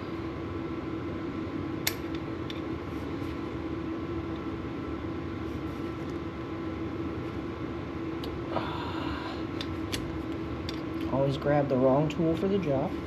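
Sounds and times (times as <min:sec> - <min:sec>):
steady low hum: 0:00.0 - 0:13.0
sharp metallic click: 0:01.8 - 0:02.6.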